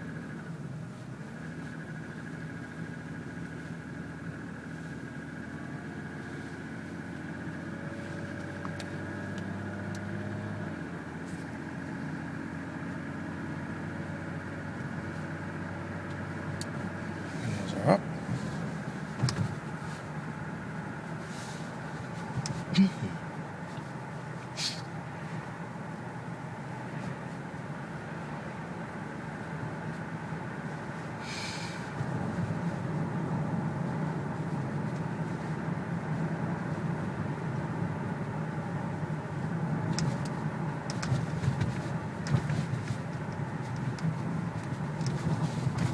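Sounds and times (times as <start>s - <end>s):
engine knocking: 0.0s - 27.0s
car engine and road noise: 0.0s - 45.9s
car engine with piston slap: 19.0s - 19.8s, 22.2s - 24.9s, 39.8s - 45.9s
brief hiss: 24.6s - 24.9s, 31.2s - 31.8s.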